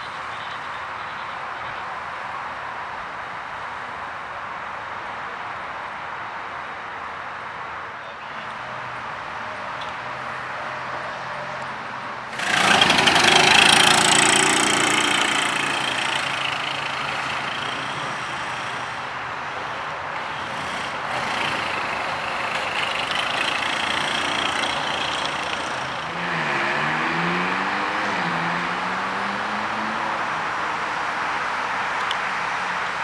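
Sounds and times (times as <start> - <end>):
car engine starting and idling: 12.2 - 31.1.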